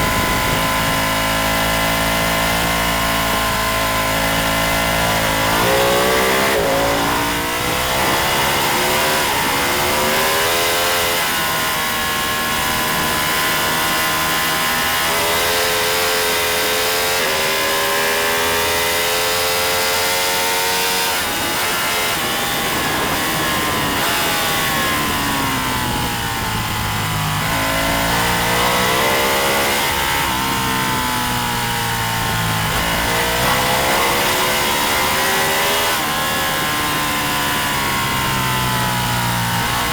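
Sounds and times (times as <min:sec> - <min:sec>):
racing motorcycle engine accelerating: 0:00.0 - 0:39.9.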